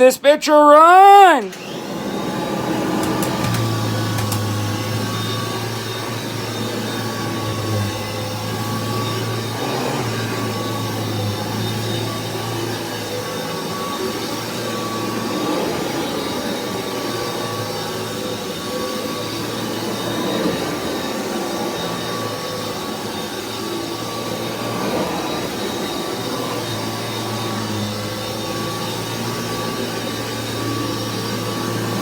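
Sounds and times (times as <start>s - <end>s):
vacuum cleaner running: 1.4s - 32.0s.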